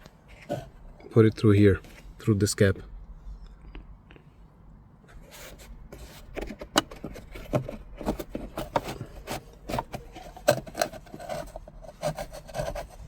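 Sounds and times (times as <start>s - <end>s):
cable scraping plastic trim: 5.2s - 13.0s.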